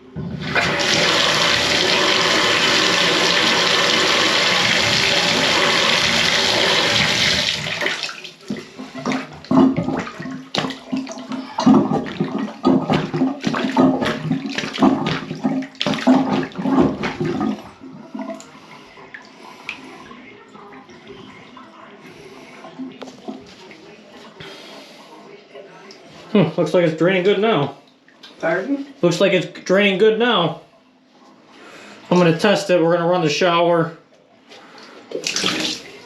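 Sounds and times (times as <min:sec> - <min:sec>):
water running into bathtub: 0:00.0 - 0:25.1, 0:34.6 - 0:36.0
plunger strokes in drain: 0:00.1 - 0:20.2.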